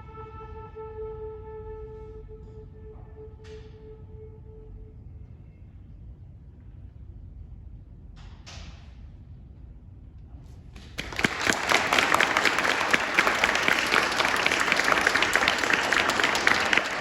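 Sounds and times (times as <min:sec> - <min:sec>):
audience applauding: 0:10.8 - 0:17.0.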